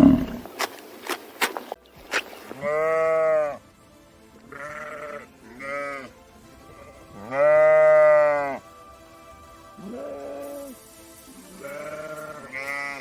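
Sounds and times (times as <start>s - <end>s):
sheep bleating: 0.0s - 0.4s, 2.6s - 3.6s, 4.5s - 6.1s, 6.7s - 8.6s, 9.8s - 10.8s, 11.6s - 13.0s.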